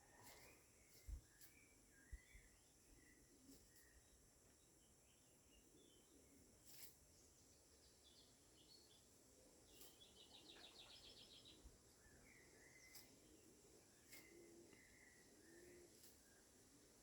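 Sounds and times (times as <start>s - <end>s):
birds chirping: 7.3s - 16.8s.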